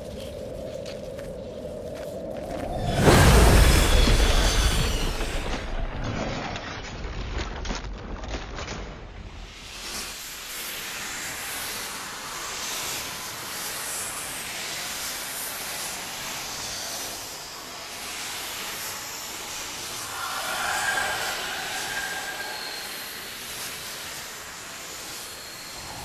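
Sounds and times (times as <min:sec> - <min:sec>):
rushing hissing noise: 0:09.5 - 0:26.0
shrill screeching tone: 0:19.9 - 0:24.2.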